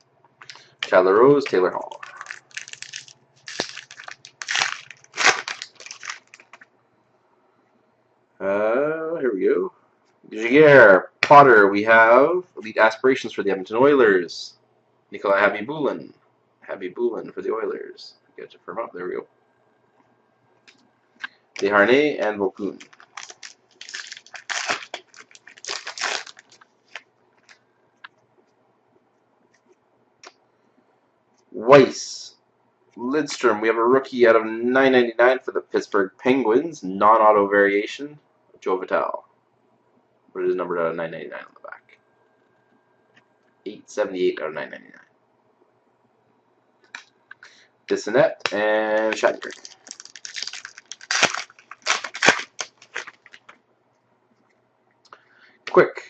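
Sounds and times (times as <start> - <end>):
packaging crinkling and rustling: 0.5 - 6.7, 22.6 - 27.6, 48.4 - 53.6.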